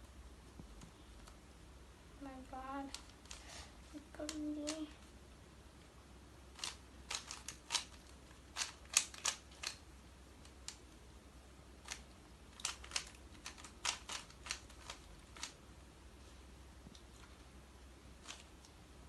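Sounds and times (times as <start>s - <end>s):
puzzle cube clicking as twisted: 6.5s - 9.8s, 11.8s - 15.6s.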